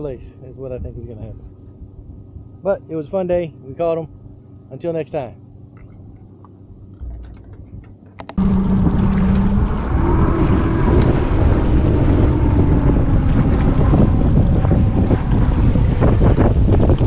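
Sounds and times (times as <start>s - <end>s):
wind buffeting microphone: 0.0s - 2.6s, 6.8s - 17.0s
outboard motor running: 5.4s - 17.0s.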